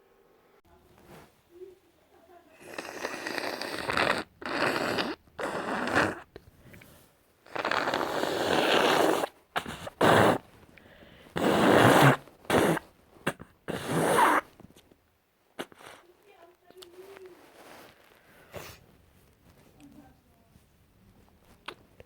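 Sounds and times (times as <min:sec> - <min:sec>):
person blowing nose: 0:02.6 - 0:06.3, 0:07.5 - 0:10.5, 0:11.2 - 0:14.5, 0:15.6 - 0:16.1.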